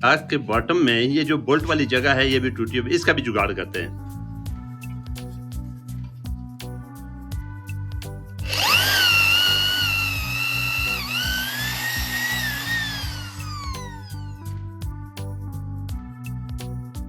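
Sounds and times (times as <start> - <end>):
background music: 0.0 - 17.0
power tool whining: 8.4 - 14.6.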